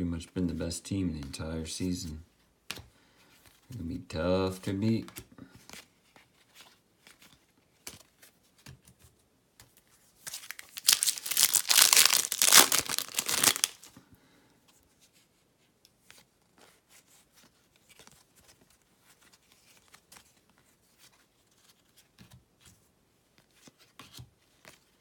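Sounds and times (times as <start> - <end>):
wrapper tearing open: 10.3 - 13.9.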